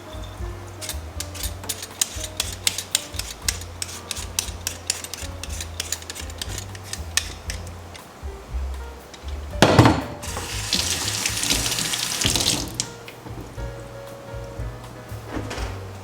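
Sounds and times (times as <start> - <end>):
vegetable peeler scraping potato: 0.8 - 8.0.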